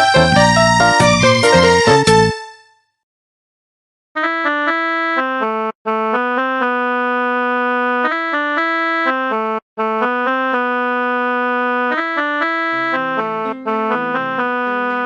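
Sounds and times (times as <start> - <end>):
ringtone melody: 0.0 - 2.7, 7.9 - 15.0.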